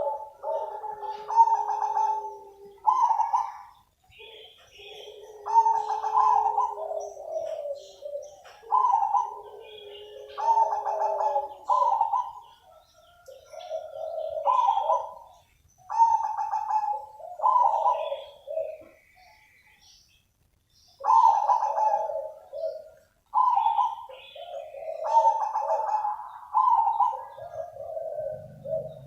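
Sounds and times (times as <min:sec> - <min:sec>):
dove rolling coos: 0:00.0 - 0:19.4, 0:21.0 - 0:29.0.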